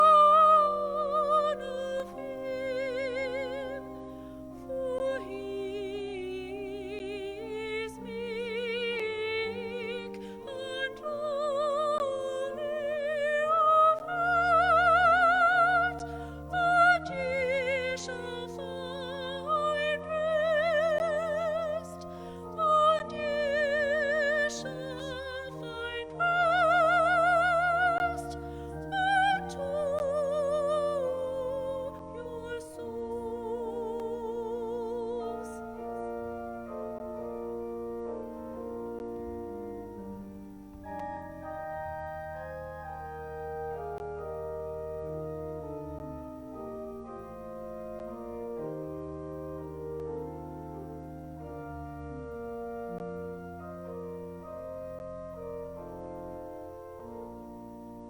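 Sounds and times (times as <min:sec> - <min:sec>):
soprano singing operatically: 0:00.0 - 0:04.0, 0:04.6 - 0:35.8
sustained keyboard accompaniment: 0:00.0 - 0:58.0.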